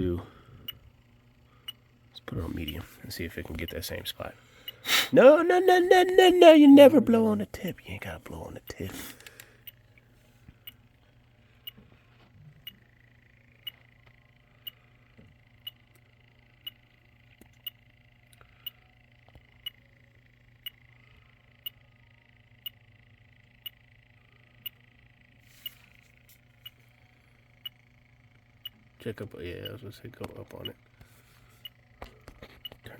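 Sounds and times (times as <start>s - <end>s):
leak detector ticking: 2.6s - 4.0s
faint high tone: 5.1s - 7.7s.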